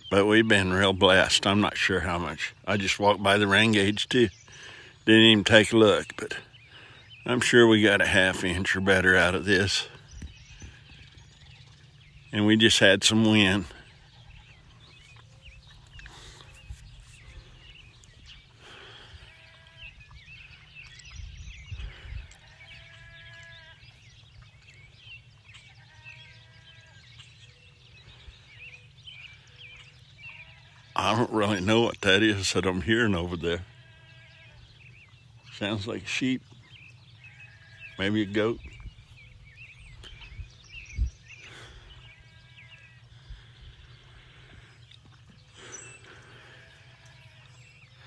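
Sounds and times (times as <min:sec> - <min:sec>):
small birds chirping: 0:00.0 - 0:48.0
distant animal bleating: 0:18.6 - 0:20.1, 0:21.8 - 0:24.0, 0:25.8 - 0:27.1, 0:30.2 - 0:35.0, 0:37.2 - 0:38.8, 0:41.4 - 0:44.7, 0:45.5 - 0:48.0.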